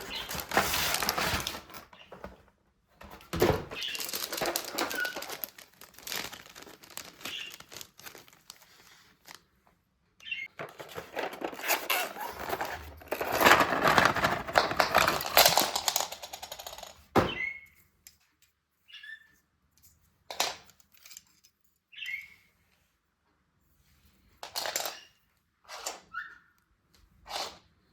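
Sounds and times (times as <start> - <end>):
packaging tearing: 0.0 - 1.8, 3.8 - 9.4, 10.8 - 15.9
packaging crinkling: 0.0 - 1.9, 3.7 - 9.5, 10.7 - 16.7.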